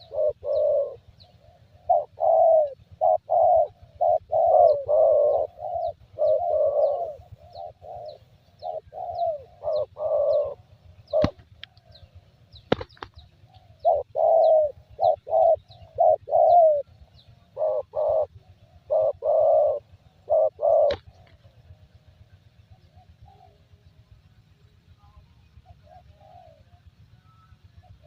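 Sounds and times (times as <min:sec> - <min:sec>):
dove cooing: 0:00.0 - 0:24.0, 0:25.1 - 0:28.0
faint high chirps: 0:22.8 - 0:28.0.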